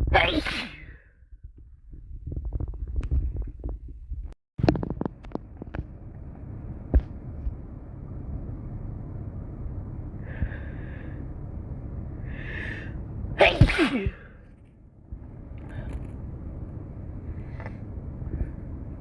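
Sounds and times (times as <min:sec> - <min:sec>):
person sneezing: 0:00.0 - 0:01.0, 0:13.4 - 0:14.4
breathy intakes of breath: 0:10.2 - 0:11.3, 0:12.2 - 0:13.0.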